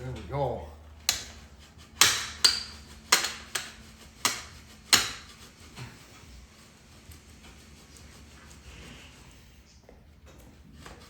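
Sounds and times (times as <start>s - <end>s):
hammer striking metal: 1.1s - 1.4s, 2.0s - 5.4s.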